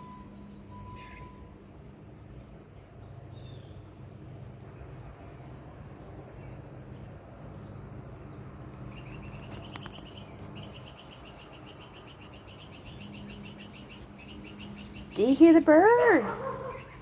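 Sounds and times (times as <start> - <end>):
low steady hum: 0.0 - 9.5
bird trilling: 9.1 - 17.0.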